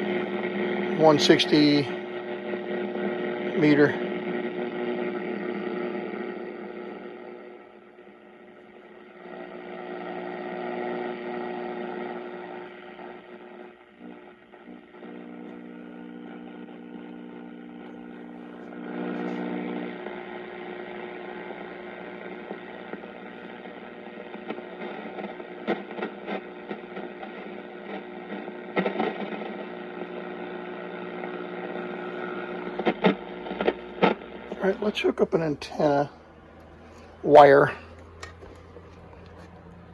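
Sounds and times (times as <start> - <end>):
radio static hiss: 0.0 - 39.9
sharp radio crackles: 0.0 - 39.9
steady radio tones: 0.0 - 39.9.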